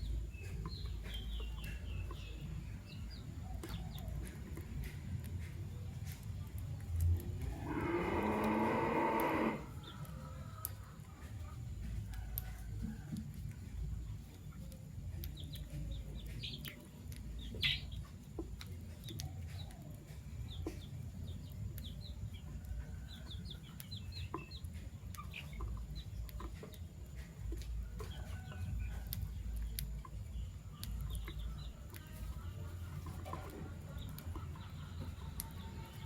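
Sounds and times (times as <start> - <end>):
lovebirds chirping: 0.0 - 8.4, 14.0 - 36.0
low background rumble: 9.6 - 36.0.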